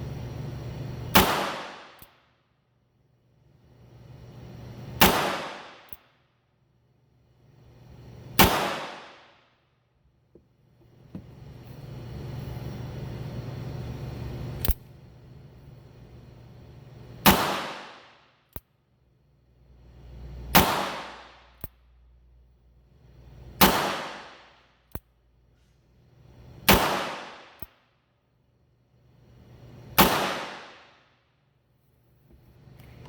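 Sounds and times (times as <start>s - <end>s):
revolver gunshots echoing: 1.2s - 2.0s, 5.0s - 5.9s, 8.4s - 9.2s, 17.2s - 18.0s, 20.5s - 21.3s, 23.6s - 24.4s, 26.7s - 27.6s, 30.0s - 30.9s.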